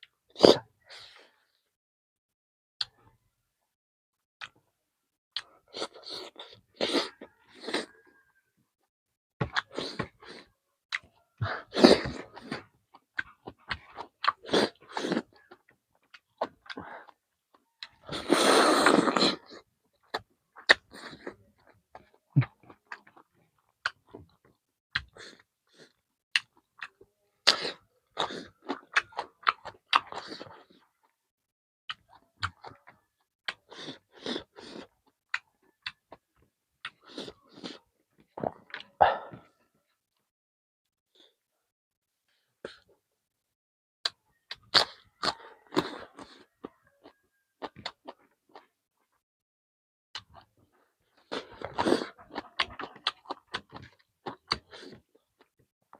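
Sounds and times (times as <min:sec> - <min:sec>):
wet chewing: 0:09.4 - 0:31.2, 0:50.2 - 0:55.6.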